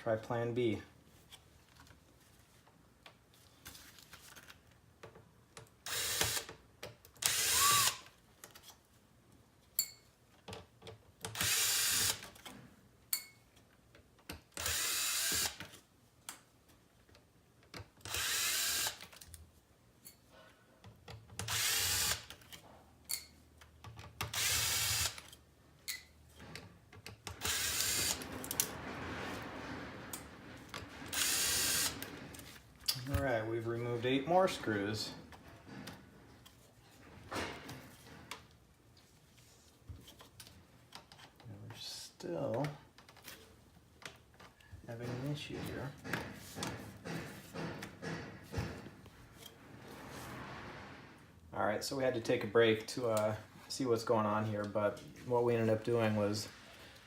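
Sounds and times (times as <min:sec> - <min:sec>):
power screwdriver whirring: 0:05.9 - 0:06.6, 0:07.2 - 0:08.1, 0:11.4 - 0:12.3, 0:14.6 - 0:15.7, 0:18.0 - 0:19.2, 0:21.4 - 0:22.4, 0:24.3 - 0:25.3, 0:27.3 - 0:28.6, 0:31.1 - 0:32.1.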